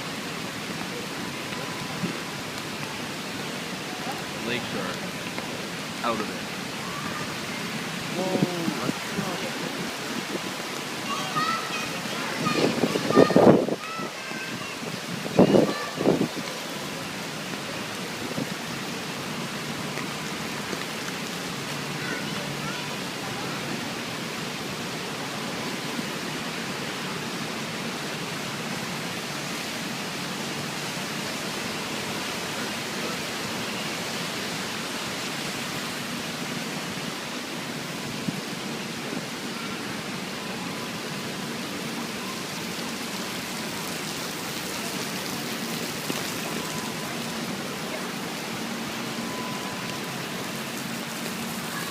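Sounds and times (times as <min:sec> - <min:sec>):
heavy rain pouring: 0:00.0 - 0:51.9.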